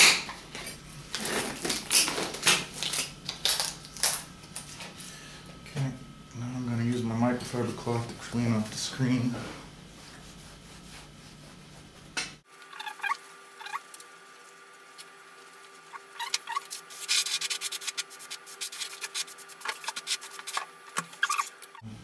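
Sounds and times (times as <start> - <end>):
cloth rubbing screen: 9.4 - 13.8
cloth squeaking on screen: 12.7 - 13.9, 15.8 - 17.6, 18.9 - 21.8.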